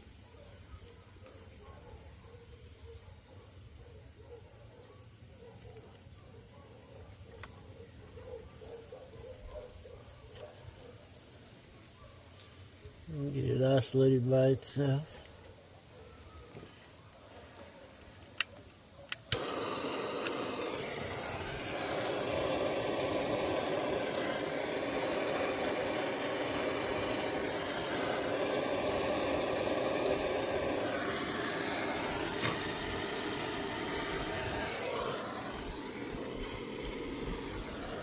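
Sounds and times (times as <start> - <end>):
heating tool hissing rush: 0.0 - 2.2, 12.7 - 15.4, 16.5 - 38.0
sharp clicks: 18.3 - 20.6.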